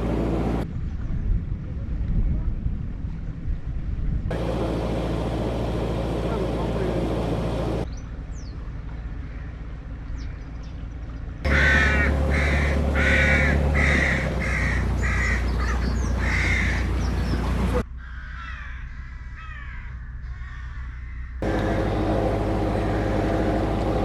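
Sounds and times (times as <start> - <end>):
steady low hum: 0.0 - 0.8, 4.0 - 18.0, 20.1 - 24.0
crow cawing: 11.5 - 17.2, 18.0 - 22.0, 22.6 - 23.6.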